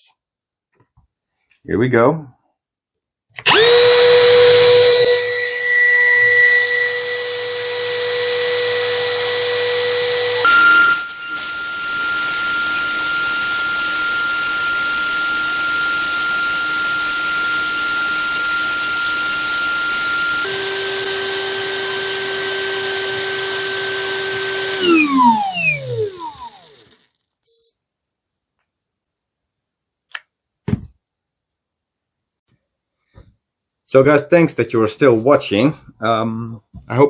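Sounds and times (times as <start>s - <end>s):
drill motor whining: 3.4s - 27.7s.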